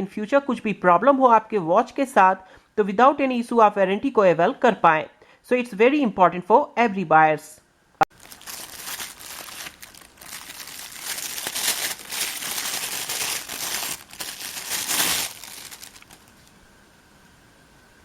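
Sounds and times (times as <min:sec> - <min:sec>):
packaging crinkling: 0:08.1 - 0:16.6.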